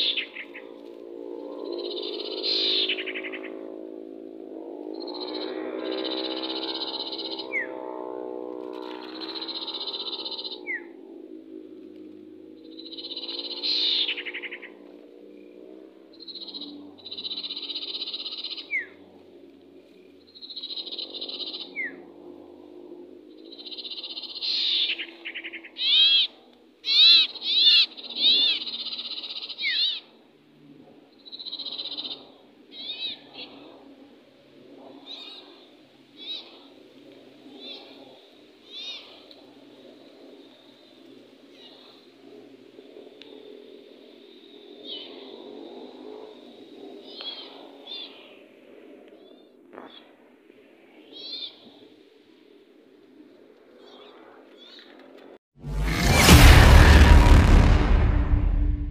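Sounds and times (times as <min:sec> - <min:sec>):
low wavering hum: 0:55.6 - 0:58.9.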